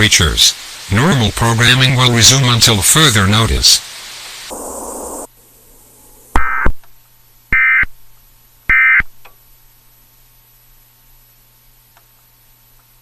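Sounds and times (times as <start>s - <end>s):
digital data bursts: 4.5s - 5.3s.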